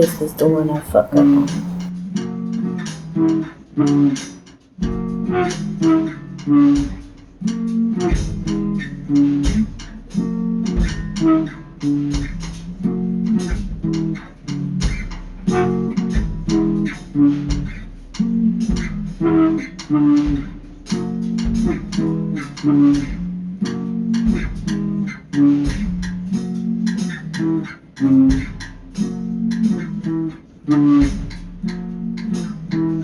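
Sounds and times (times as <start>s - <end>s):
guitar with steady beat: 0.0s - 33.0s.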